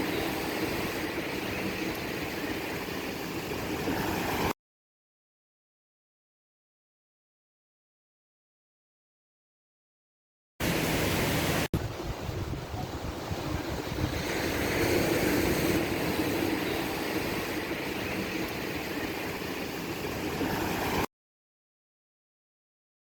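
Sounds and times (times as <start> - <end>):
wind buffeting microphone: 10.7 - 21.0.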